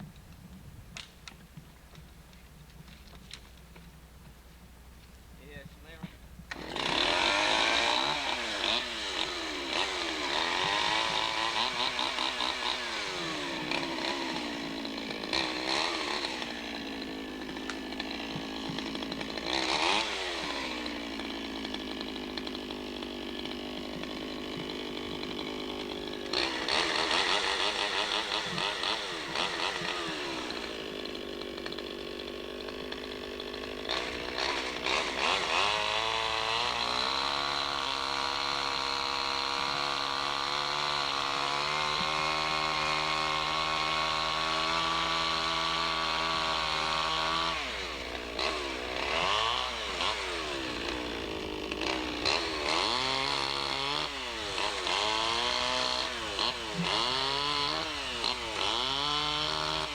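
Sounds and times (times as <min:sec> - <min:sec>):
chainsaw cutting wood: 0:00.0 - 0:59.9.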